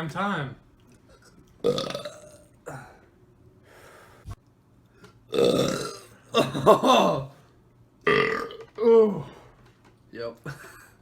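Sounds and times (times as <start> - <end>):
loud burps: 1.6 - 2.9, 5.3 - 7.3, 8.0 - 8.9.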